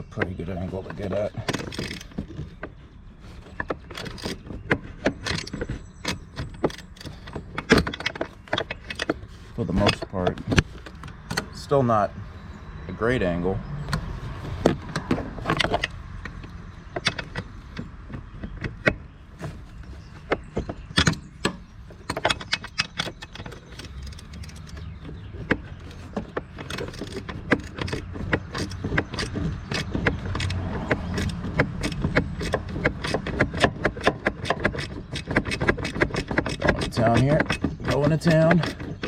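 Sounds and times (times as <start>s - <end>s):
ratchet wrench clicking: 28.6s - 38.8s.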